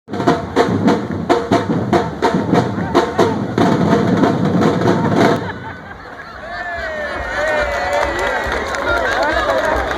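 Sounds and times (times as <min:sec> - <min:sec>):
music with fast drum beat: 0:00.1 - 0:05.6.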